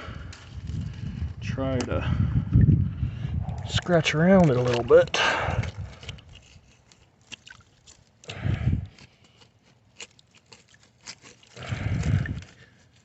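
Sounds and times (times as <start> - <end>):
stick scratching in gravel: 3.7 - 5.2, 5.8 - 8.2, 8.9 - 13.0.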